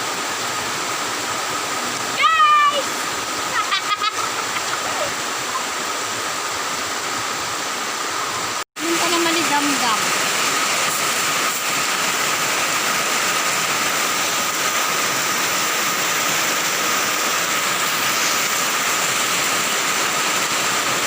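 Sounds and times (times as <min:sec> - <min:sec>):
heavy rain pouring: 0:00.0 - 0:21.0.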